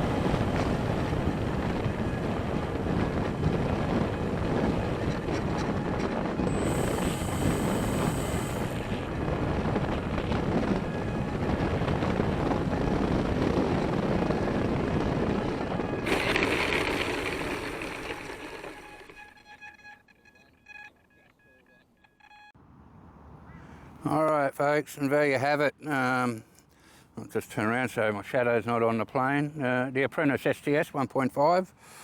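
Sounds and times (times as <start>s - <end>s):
air rushing past plane: 0.0s - 19.1s
electric motor and propeller: 0.0s - 20.0s.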